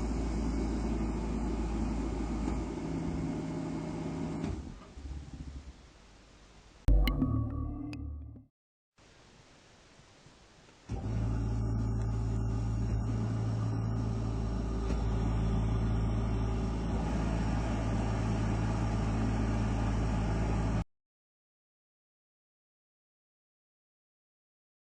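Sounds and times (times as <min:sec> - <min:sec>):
air compressor humming: 0:10.9 - 0:20.8.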